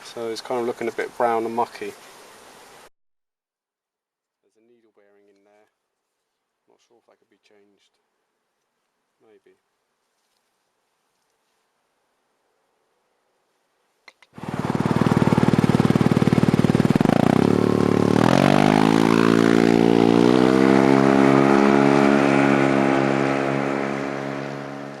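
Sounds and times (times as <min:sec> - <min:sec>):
motor running with pulsing note: 0:14.4 - 0:23.2.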